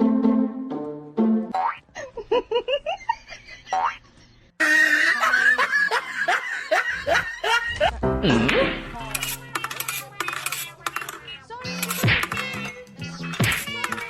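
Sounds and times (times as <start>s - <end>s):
noisy background: 8.0s - 14.0s.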